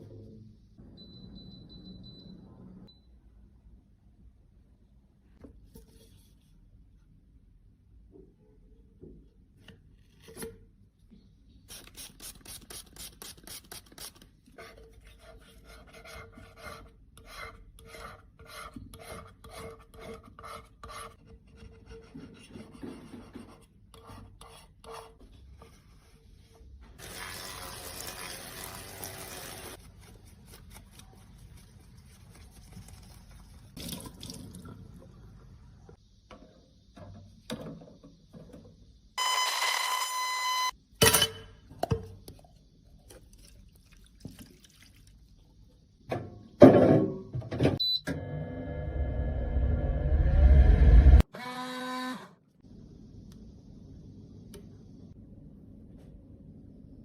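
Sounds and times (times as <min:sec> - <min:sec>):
tool scraping makeup product: 0:12.5 - 0:25.2.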